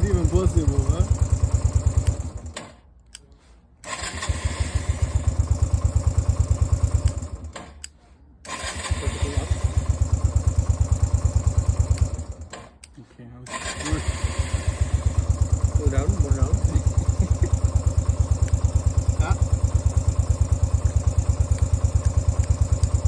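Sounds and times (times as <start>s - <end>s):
motorcycle engine idling: 0.0s - 2.6s, 4.0s - 7.6s, 8.5s - 12.5s, 13.5s - 23.0s.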